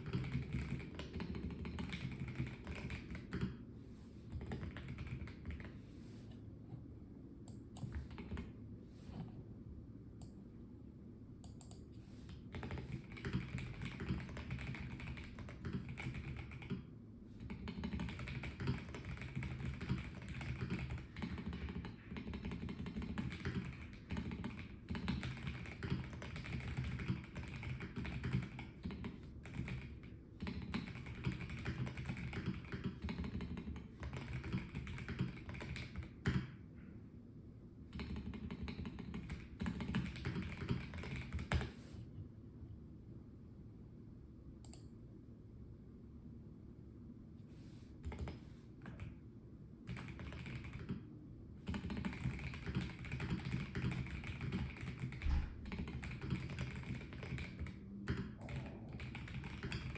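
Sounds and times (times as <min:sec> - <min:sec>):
mechanical keyboard typing: 0:00.0 - 0:03.6, 0:04.3 - 0:05.7, 0:12.5 - 0:16.8, 0:17.4 - 0:36.5, 0:37.9 - 0:41.7, 0:49.9 - 0:51.0, 0:51.6 - 0:59.9.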